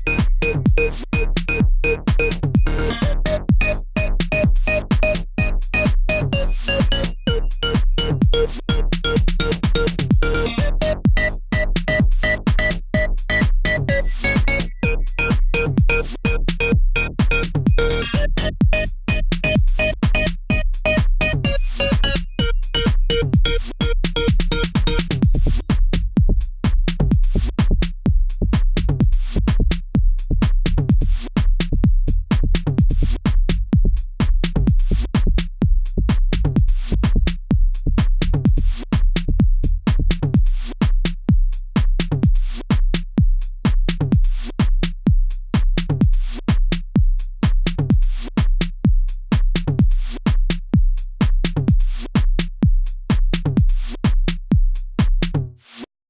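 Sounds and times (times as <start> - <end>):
electronic dance music: 0.0 - 25.7.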